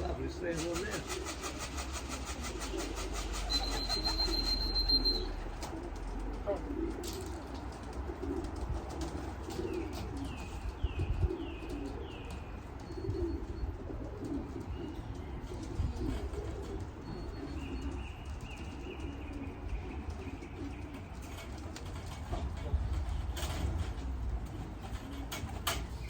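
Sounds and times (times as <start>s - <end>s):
pigeons cooing: 0.0s - 26.0s.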